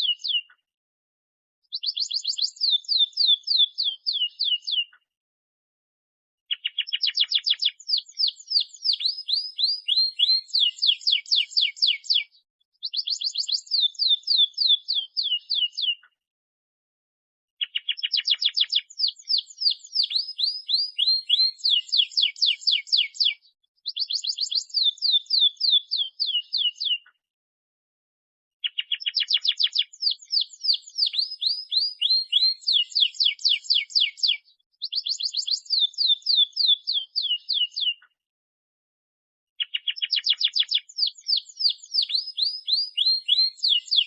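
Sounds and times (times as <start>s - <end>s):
canary singing rapid trills: 1.7s - 4.9s, 6.5s - 16.0s, 17.6s - 27.0s, 28.6s - 38.0s, 39.6s - 44.0s.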